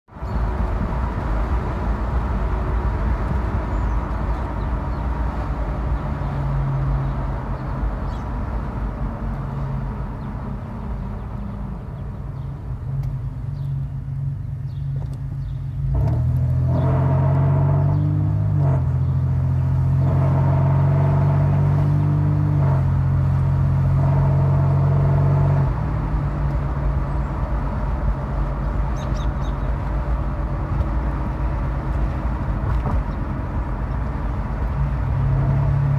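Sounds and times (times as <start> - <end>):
vehicle low droning hum: 0.2 - 35.9.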